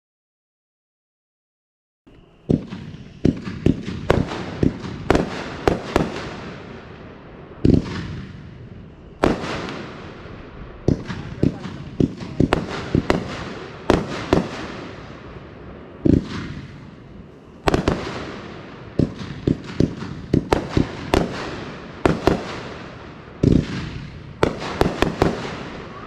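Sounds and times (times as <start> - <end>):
firework tubes launching thuds: 23.4 - 25.9.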